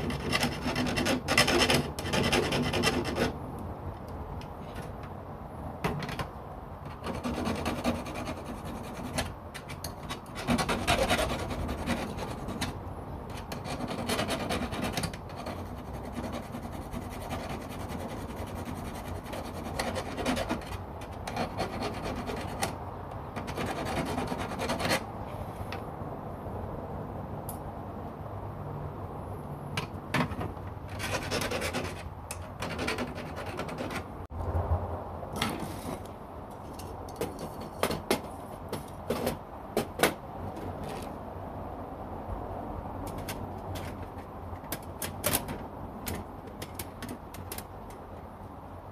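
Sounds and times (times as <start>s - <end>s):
hacksaw scraping metal grill: 0.0s - 3.4s, 6.9s - 22.8s, 23.4s - 25.1s, 29.8s - 34.2s.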